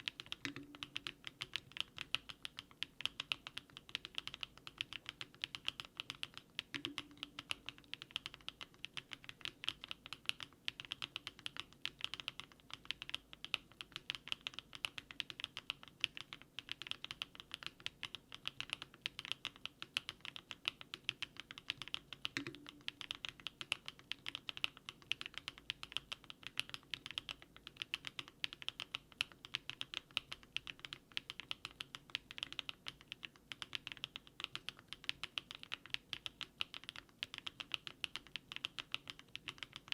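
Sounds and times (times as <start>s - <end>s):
fast typing on mechanical keyboard: 0.0s - 39.9s.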